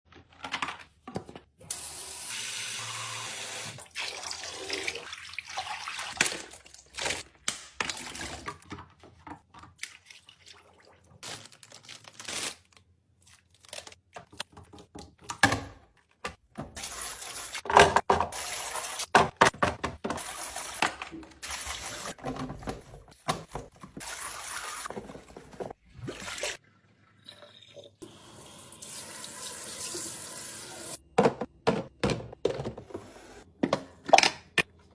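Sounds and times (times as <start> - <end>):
containers knocking and clicking: 31.1 - 33.0, 33.6 - 34.7.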